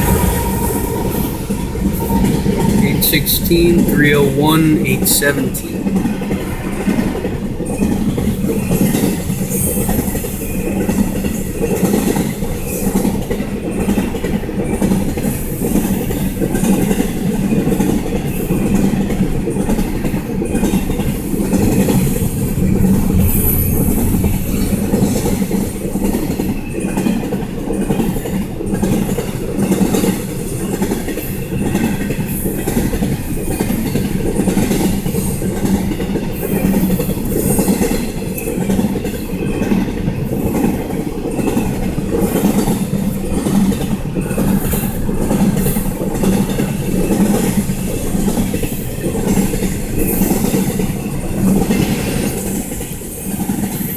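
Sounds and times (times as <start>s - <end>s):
freight train rumbling past: 0.0s - 53.9s.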